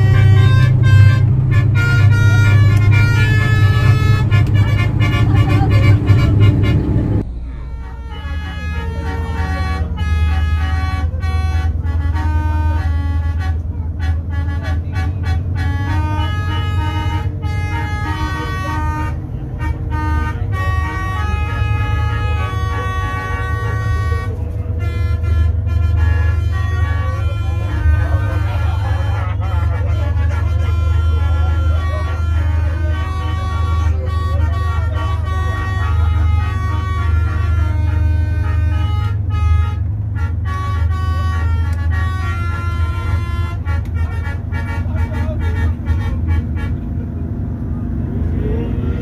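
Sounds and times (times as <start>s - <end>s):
low rumble: 0.0s - 21.1s, 38.9s - 49.0s
musical air horn tune: 0.0s - 46.9s.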